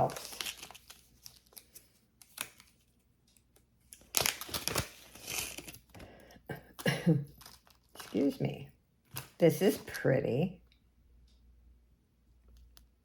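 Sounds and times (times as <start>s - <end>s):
plastic bag crinkling: 0.0s - 2.4s, 3.9s - 6.0s, 7.2s - 8.4s.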